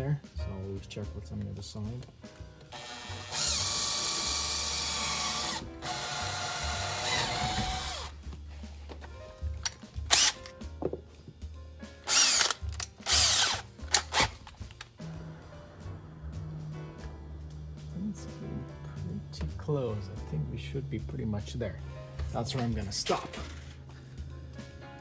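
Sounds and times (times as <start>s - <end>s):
power drill boring: 2.7s - 8.2s, 10.1s - 10.5s, 12.0s - 17.8s.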